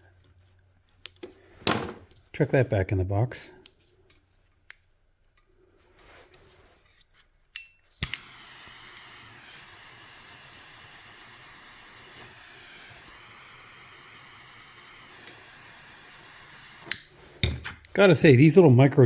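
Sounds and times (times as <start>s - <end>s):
torch clicking alight: 7.6s - 17.2s
torch flame hissing: 8.0s - 18.0s.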